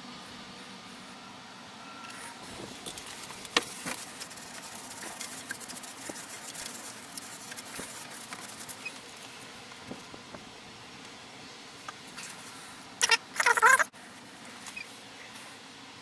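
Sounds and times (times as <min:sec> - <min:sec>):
scratchy rustling: 0:02.5 - 0:09.5.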